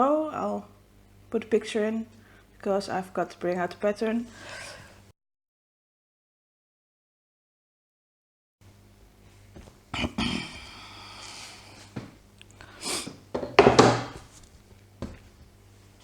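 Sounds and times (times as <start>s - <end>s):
rustling and shuffling: 9.1s - 9.9s, 11.2s - 12.2s, 13.0s - 16.0s
sharp knocks: 13.4s - 14.3s.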